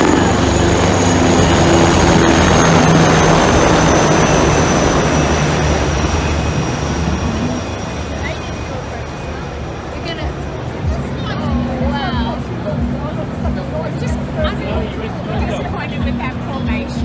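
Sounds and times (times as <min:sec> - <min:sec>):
jet aircraft roar: 0:00.0 - 0:17.0.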